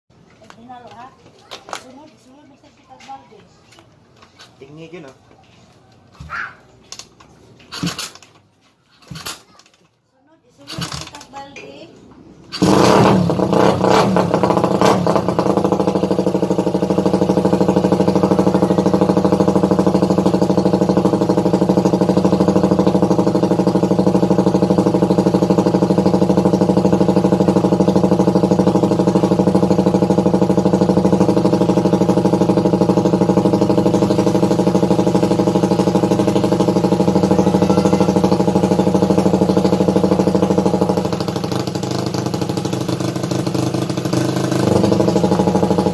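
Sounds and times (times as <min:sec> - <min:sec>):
motorcycle engine idling: 0:12.1 - 0:45.9.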